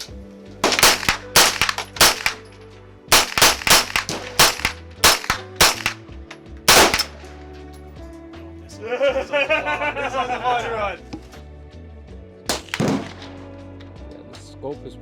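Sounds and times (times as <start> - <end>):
background music: 0.0 - 15.0
rifle gunshots: 0.6 - 2.5, 3.1 - 6.0, 6.7 - 7.3, 12.5 - 13.6.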